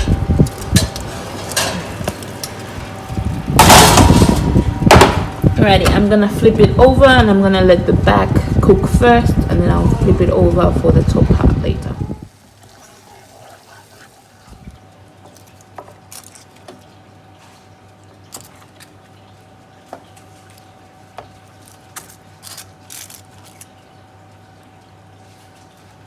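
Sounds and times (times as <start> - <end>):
hot oil popping and crackling: 0.0 - 6.0
low steady hum: 0.0 - 26.0.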